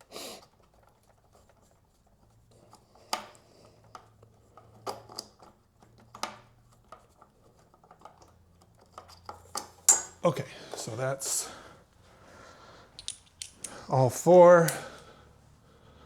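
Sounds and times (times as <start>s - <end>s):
tools clicking on metal: 13.0s - 14.0s.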